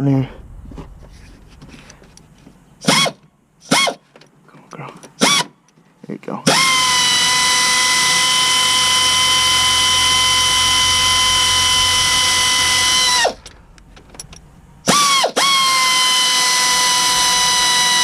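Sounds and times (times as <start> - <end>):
pneumatic air gun whining: 2.8 - 4.2, 5.2 - 5.6, 6.5 - 13.6, 14.8 - 18.0.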